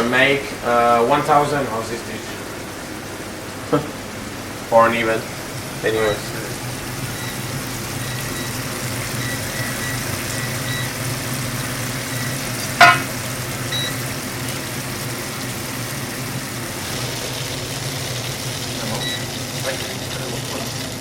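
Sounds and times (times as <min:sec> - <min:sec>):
low kitchen hum: 0:00.0 - 0:21.0
food sizzling in hot oil: 0:02.4 - 0:21.0
sharp high-pitched sound: 0:12.8 - 0:13.2.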